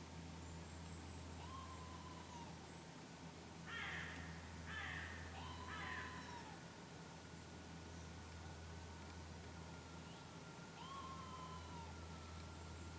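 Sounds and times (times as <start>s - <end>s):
gliding whining animal calls: 10.8s - 12.1s.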